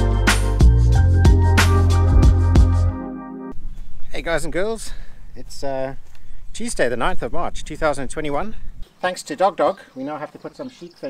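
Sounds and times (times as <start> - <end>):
held bass notes: 0.0 - 3.5.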